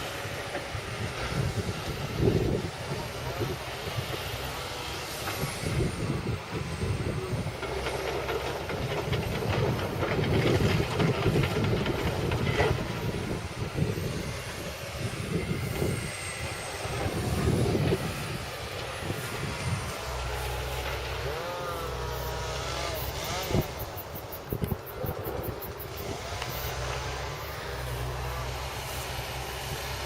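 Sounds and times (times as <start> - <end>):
excavator diesel engine under load: 0.0 - 30.0
irregular knocks and clatter: 7.6 - 13.2.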